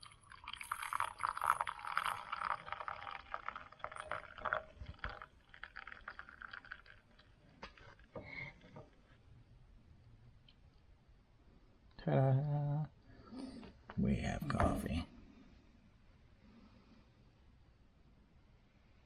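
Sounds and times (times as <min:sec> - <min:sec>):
water pouring into a mug: 0:00.0 - 0:08.2.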